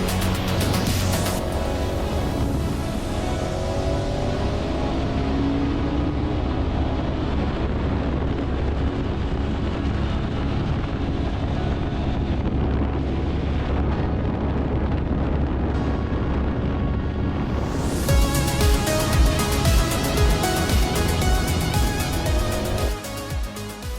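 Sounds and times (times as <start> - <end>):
wind rushing over microphone: 0.0 - 22.9
steady low drone: 0.0 - 23.9.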